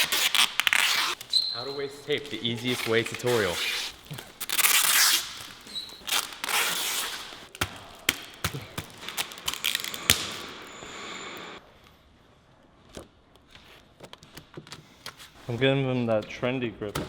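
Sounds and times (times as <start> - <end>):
tape pulled off roll: 2.6 - 11.2.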